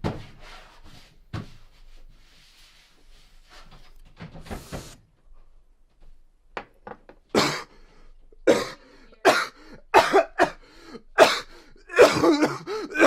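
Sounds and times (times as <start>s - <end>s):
person coughing hard: 7.3s - 7.8s, 8.4s - 13.0s.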